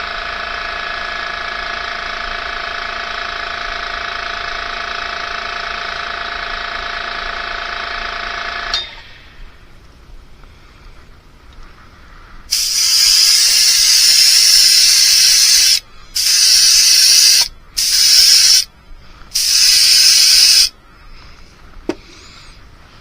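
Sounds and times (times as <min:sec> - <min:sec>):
spray paint hissing: 0:12.5 - 0:18.7, 0:19.3 - 0:20.7.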